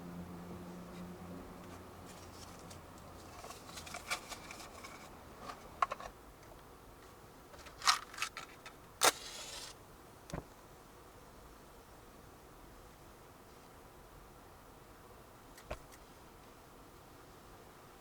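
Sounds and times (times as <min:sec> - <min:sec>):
short hiss: 0:09.0 - 0:09.8.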